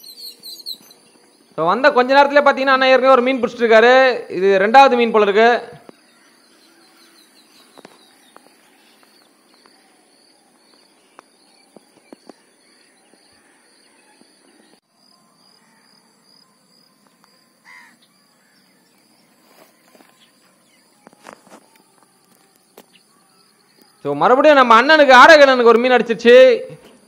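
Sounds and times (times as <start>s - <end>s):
bird call: 0.0s - 1.3s
insects chirping: 0.0s - 3.6s, 4.2s - 27.0s.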